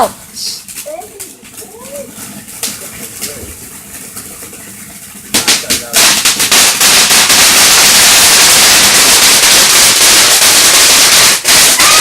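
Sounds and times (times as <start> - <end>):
firework crackling bangs: 0.0 - 12.0.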